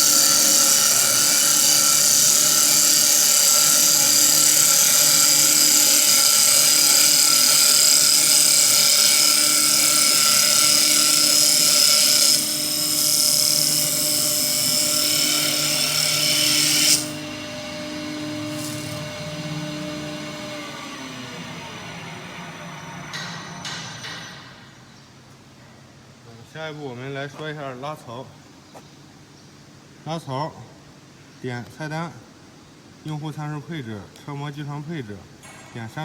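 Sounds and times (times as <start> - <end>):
lathe cutter hissing on wood: 0.0 - 22.6
machine motor whine: 0.0 - 24.5.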